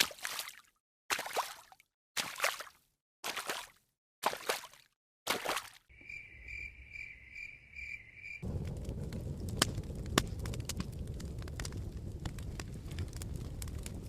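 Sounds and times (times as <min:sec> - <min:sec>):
cricket chirping: 0:05.9 - 0:08.6
low rumble: 0:06.3 - 0:14.0
crackles and sharp pops: 0:08.2 - 0:14.0.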